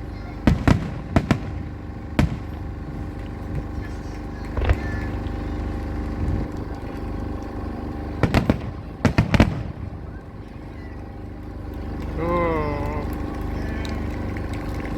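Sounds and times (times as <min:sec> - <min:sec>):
fireworks bangs: 0:00.0 - 0:11.2
steady low rumble: 0:00.0 - 0:14.9.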